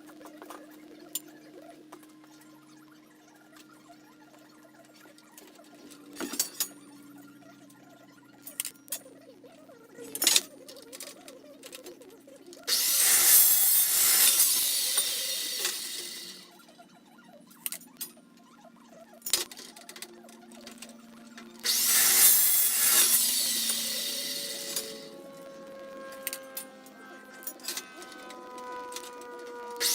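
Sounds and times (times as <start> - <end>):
cold cut saw cutting steel: 12.7 - 16.6, 21.6 - 25.4, 27.3 - 29.9.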